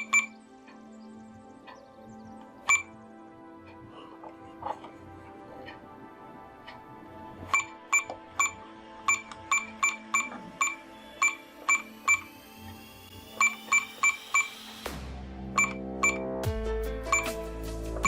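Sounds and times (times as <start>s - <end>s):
short electronic beeps: 0.0s - 0.4s, 7.5s - 12.6s, 13.2s - 14.6s, 15.6s - 16.2s
background music held tones: 0.0s - 18.0s.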